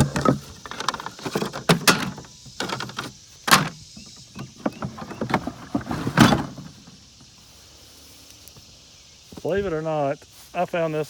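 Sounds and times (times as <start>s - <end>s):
hard objects knocking and scraping: 0.0s - 6.8s.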